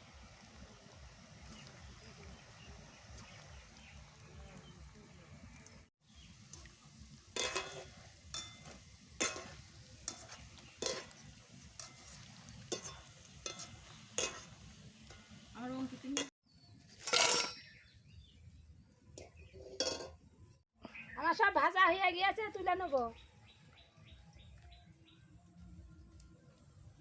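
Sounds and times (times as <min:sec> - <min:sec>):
pakoras sizzling in hot oil: 0:00.0 - 0:23.8
utensil scraping and clinking on pan: 0:07.3 - 0:15.5, 0:17.0 - 0:17.7, 0:19.2 - 0:20.2.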